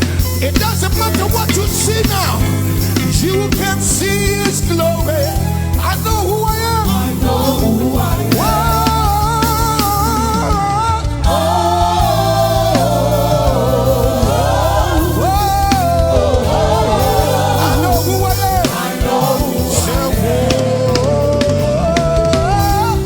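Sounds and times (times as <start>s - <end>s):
band with steady bass: 0.0s - 23.0s
voices singing together: 6.5s - 23.0s.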